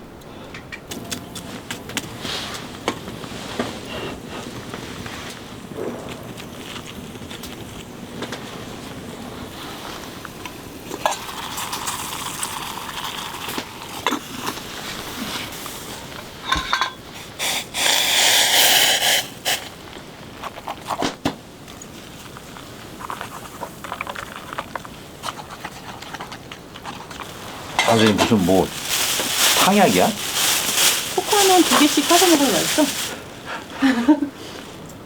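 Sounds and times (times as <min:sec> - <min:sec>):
cookware clinking and knocking: 0:16.4 - 0:17.0
loud rustling: 0:26.8 - 0:33.4.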